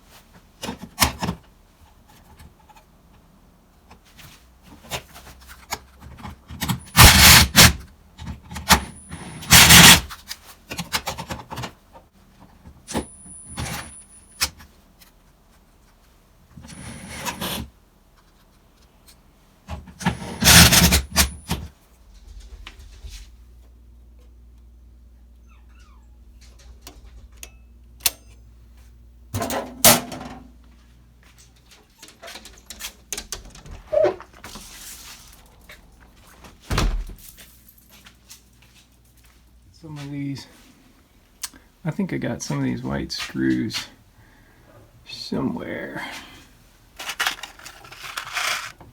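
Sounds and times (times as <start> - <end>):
rummaging through screws: 9.4 - 10.1, 20.1 - 21.4, 47.0 - 48.8.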